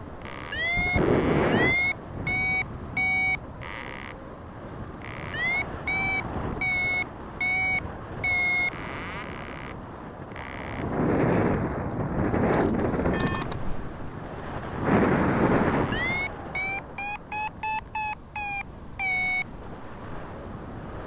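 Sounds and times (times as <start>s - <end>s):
wind noise on microphone: 0.0s - 21.0s
variometer beeping: 0.2s - 4.2s, 5.0s - 10.9s, 13.1s - 13.6s, 15.8s - 19.5s.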